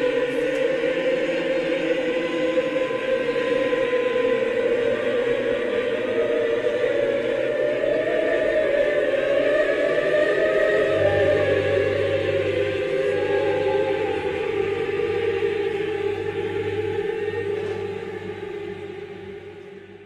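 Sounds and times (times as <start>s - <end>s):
music of held chords: 0.0s - 20.0s
low steady drone: 1.1s - 20.0s.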